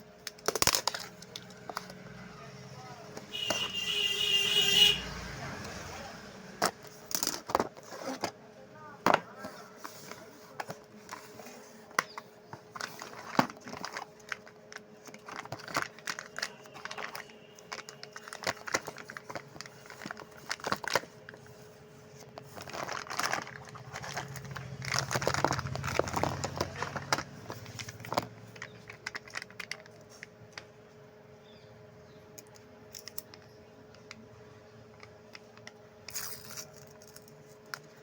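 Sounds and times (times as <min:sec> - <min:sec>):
plastic wrapper crinkling: 0:00.2 - 0:02.0, 0:12.1 - 0:30.7.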